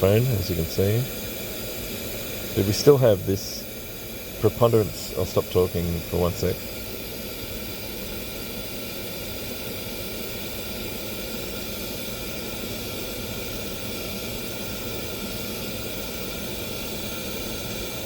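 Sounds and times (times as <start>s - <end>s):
white noise hiss from speakers: 0.0s - 7.2s.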